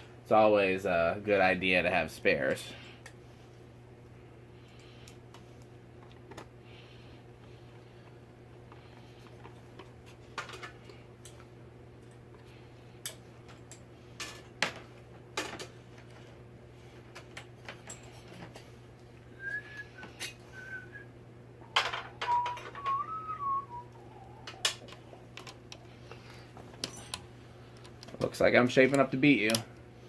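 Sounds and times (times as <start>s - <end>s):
steady low hum: 0.0s - 30.0s
person whistling: 19.4s - 24.9s.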